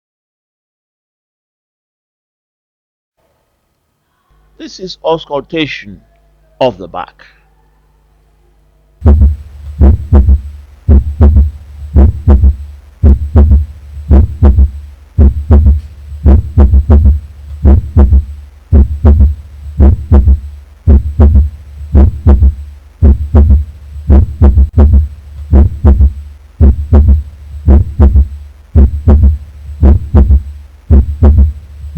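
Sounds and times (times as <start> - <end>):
heartbeat through a stethoscope: 9.0 - 31.9.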